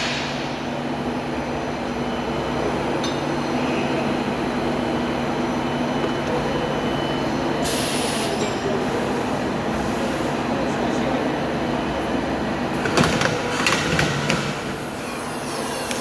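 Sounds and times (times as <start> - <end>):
tube punching machine humming: 11.6 - 16.0.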